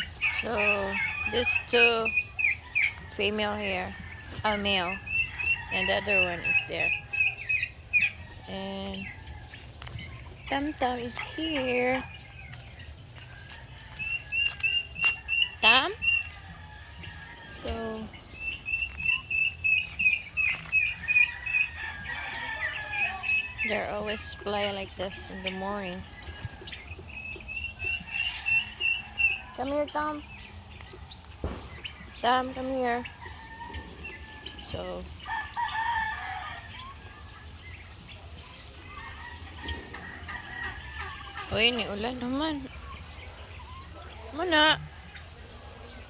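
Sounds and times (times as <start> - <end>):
bird chirping: 0.0 - 39.9
chickens clucking: 0.0 - 46.0
rooster crowing: 21.2 - 23.6, 35.2 - 36.9.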